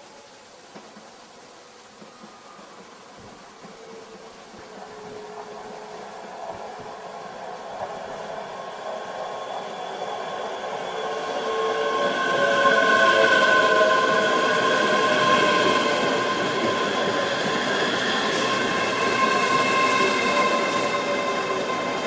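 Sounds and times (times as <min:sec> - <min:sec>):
train approaching: 0:00.0 - 0:22.0
steady high tones: 0:08.2 - 0:22.0.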